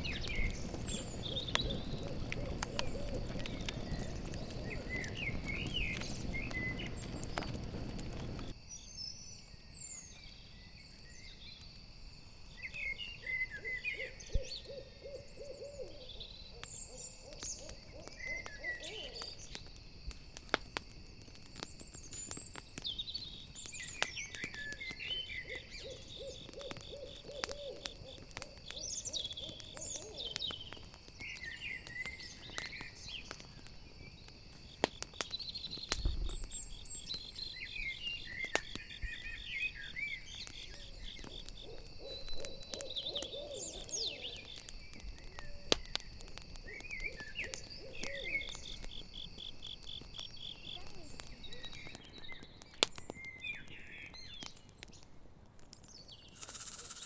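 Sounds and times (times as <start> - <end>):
owl hooting: 0.0 - 8.4, 13.6 - 16.2, 16.8 - 19.4, 25.4 - 30.4, 41.6 - 44.5, 47.0 - 48.5, 56.4 - 57.0
high chirping calls: 0.0 - 8.5, 56.3 - 57.0
campfire crackling and popping: 0.0 - 8.7, 15.8 - 57.0
crickets chirping: 0.0 - 52.6, 56.3 - 57.0.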